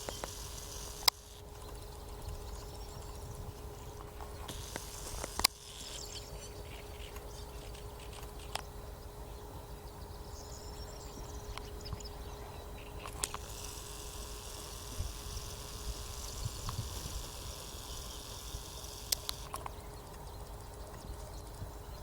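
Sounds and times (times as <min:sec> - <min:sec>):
sharp clicks: 0:00.0 - 0:01.8, 0:04.4 - 0:06.0, 0:13.0 - 0:20.2
birds calling faintly: 0:00.0 - 0:22.0.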